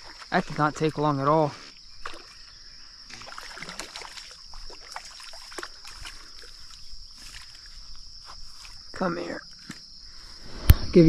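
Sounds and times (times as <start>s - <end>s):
water splashing and dripping: 0.0s - 8.9s
high-pitched insect chorus: 0.0s - 11.0s.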